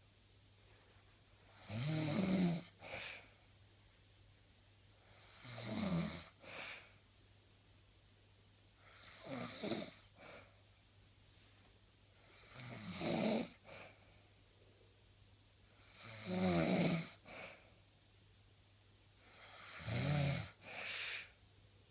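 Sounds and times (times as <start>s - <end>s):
person snoring: 1.4s - 3.3s, 5.1s - 6.9s, 8.8s - 10.5s, 12.2s - 13.9s, 15.7s - 17.6s, 19.2s - 21.4s.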